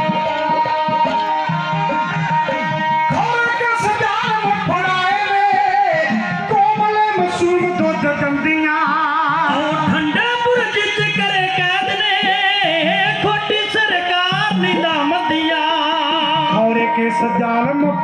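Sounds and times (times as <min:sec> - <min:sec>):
devotional instrumental music: 0:00.0 - 0:18.0.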